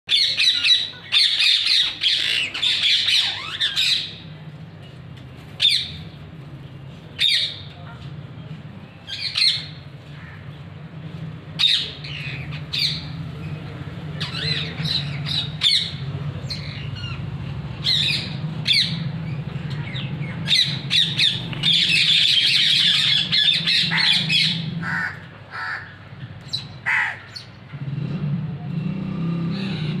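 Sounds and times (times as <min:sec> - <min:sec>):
parrots squawking: 0:00.1 - 0:04.2, 0:14.2 - 0:17.2, 0:17.8 - 0:27.5.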